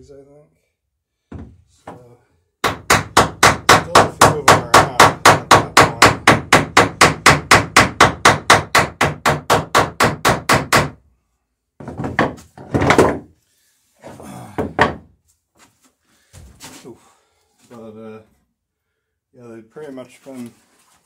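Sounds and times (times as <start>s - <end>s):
irregular knocks: 1.3s - 2.0s, 11.8s - 13.3s, 14.6s - 15.1s.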